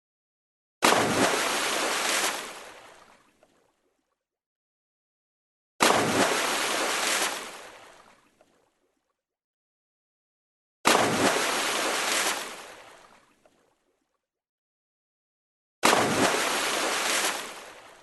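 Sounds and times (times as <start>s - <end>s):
water splash: 0.8s - 3.7s, 5.8s - 8.7s, 10.9s - 13.7s, 15.8s - 18.0s.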